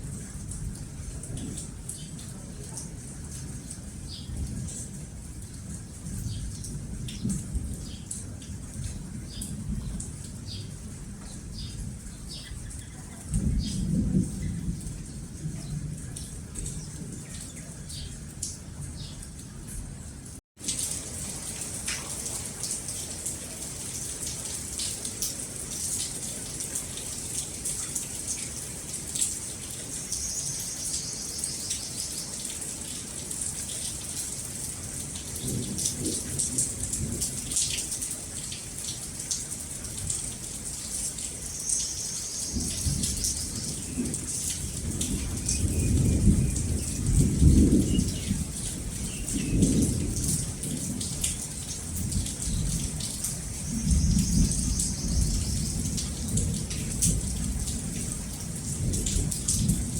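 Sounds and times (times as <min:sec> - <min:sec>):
steady rain falling: 0:00.0 - 0:59.9
thunder rumbling: 0:13.3 - 0:17.3, 0:42.5 - 0:51.1, 0:52.0 - 0:58.1.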